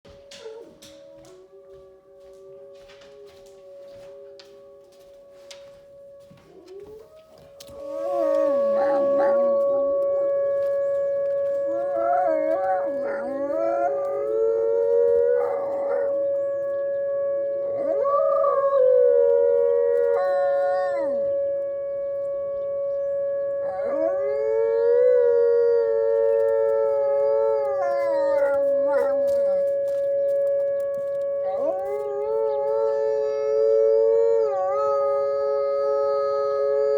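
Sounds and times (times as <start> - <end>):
wolfdog howling: 6.2 - 21.4, 23.1 - 36.9.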